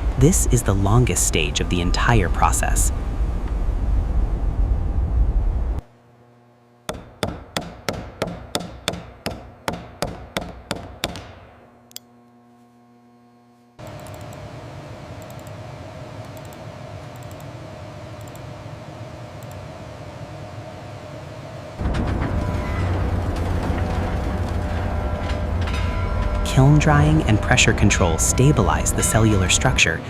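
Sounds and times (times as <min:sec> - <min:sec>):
steady machine hum: 0:00.0 - 0:30.0
sharp ringing knocks: 0:06.9 - 0:11.5.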